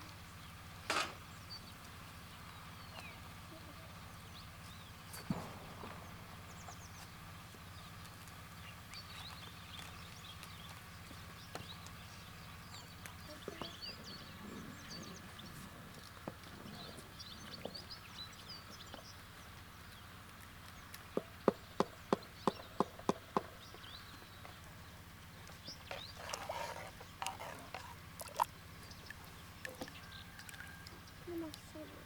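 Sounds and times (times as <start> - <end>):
small birds chirping: 0.0 - 32.0
sharp knocks: 5.2 - 7.2.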